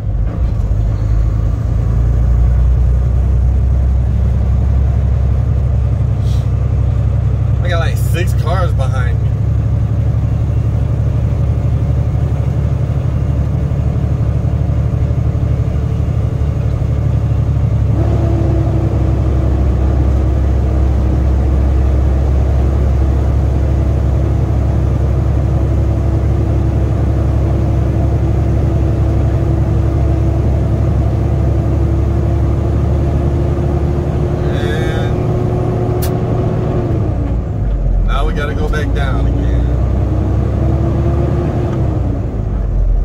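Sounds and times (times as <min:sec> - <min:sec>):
rising engine tone: 0:00.0 - 0:07.5, 0:08.3 - 0:43.0
truck engine deep rumble: 0:00.0 - 0:43.0.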